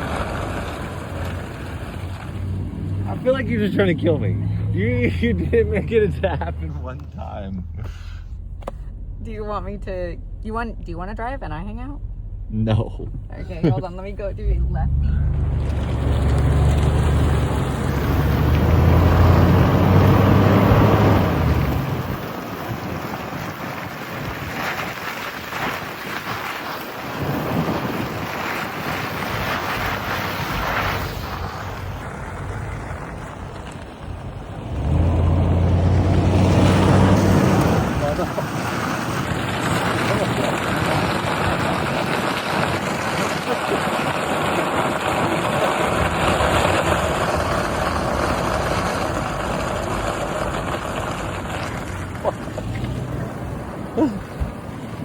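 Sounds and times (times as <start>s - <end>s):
low engine rumble: 0.0s - 55.0s
road noise from moving vehicle: 0.0s - 55.0s
wind rushing over microphone: 13.0s - 55.0s.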